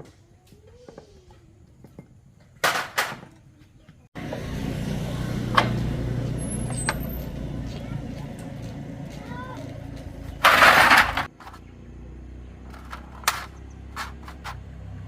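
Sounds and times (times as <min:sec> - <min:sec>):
motorcycle engine idling: 0:04.2 - 0:13.8.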